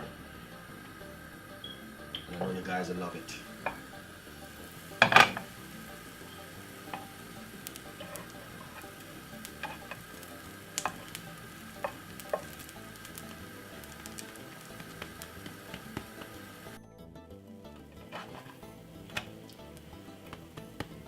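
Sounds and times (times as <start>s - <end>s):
batter sizzling in a pan: 0.0s - 16.8s, 18.0s - 21.0s
utensil clicking on a pan: 3.6s - 16.6s.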